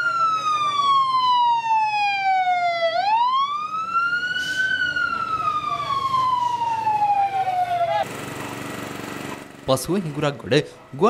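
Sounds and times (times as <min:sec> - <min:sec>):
emergency vehicle siren wailing: 0:00.0 - 0:08.1.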